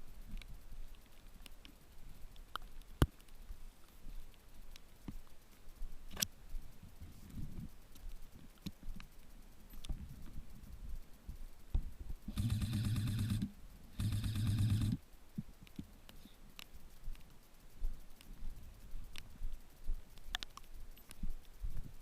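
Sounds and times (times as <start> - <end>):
airsoft gun buzzing on full auto: 12.3 - 15.0.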